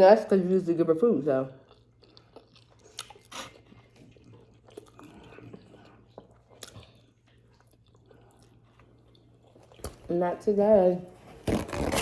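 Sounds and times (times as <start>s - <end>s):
person chewing food: 1.6s - 10.1s.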